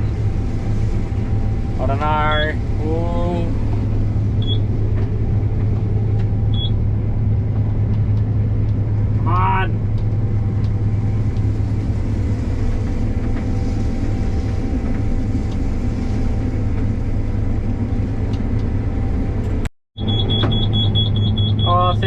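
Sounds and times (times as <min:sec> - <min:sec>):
combine harvester engine drone: 0:00.0 - 0:22.0
high-pitched alarm beeping: 0:04.4 - 0:04.6, 0:06.5 - 0:06.8, 0:20.0 - 0:22.0.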